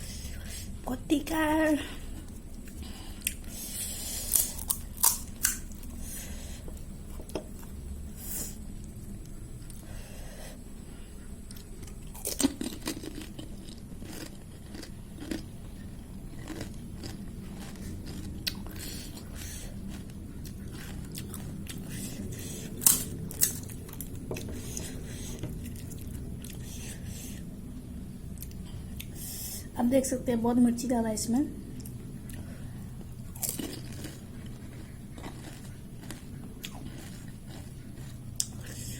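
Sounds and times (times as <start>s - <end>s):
crisp shells crunching when chewed: 2.6s - 6.0s, 11.5s - 25.0s, 31.8s - 38.9s.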